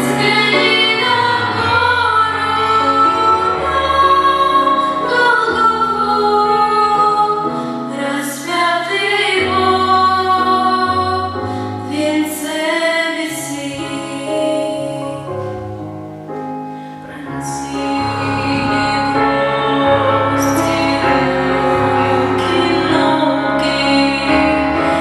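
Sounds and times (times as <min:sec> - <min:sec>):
instrumental accompaniment: 0:00.0 - 0:25.0
women singing together: 0:17.5 - 0:25.0.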